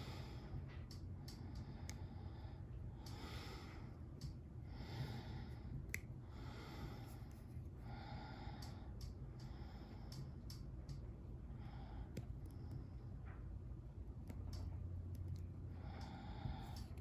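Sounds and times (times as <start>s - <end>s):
person breathing heavily: 1.5s - 4.0s, 4.6s - 10.4s, 15.7s - 17.0s.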